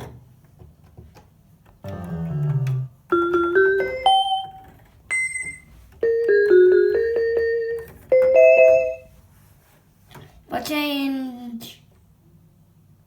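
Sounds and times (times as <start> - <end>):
keyboard vibraphone notes: 3.1 - 9.1.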